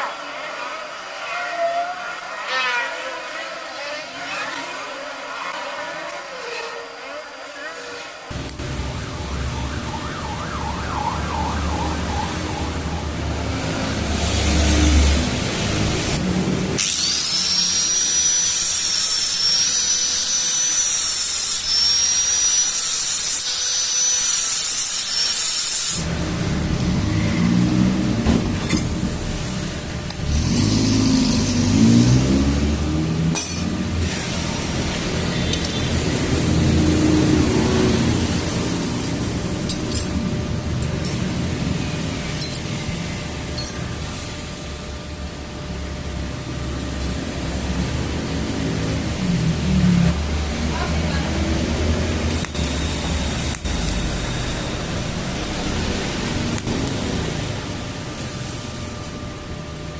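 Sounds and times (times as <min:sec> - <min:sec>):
high tool whine dipping: 0:08.3 - 0:27.6, 0:51.6 - 0:58.6
handheld power tool running: 0:16.8 - 0:26.1.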